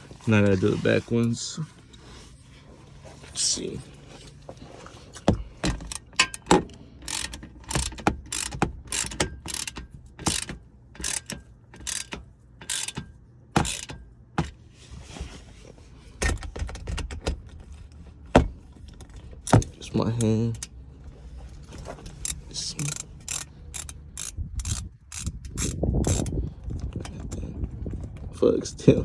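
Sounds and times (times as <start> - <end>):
hand ratchet clicking: 5.6 - 14.5, 22.1 - 26.4.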